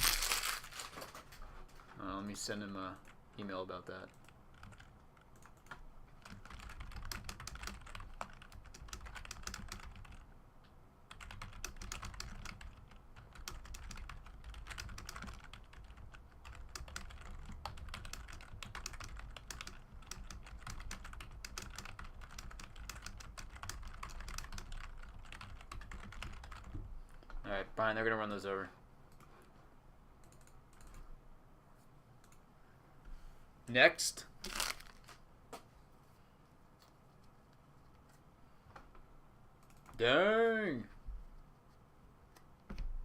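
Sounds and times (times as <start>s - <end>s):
keyboard typing: 4.0s - 10.2s, 11.1s - 27.3s, 30.2s - 31.1s, 39.6s - 40.0s.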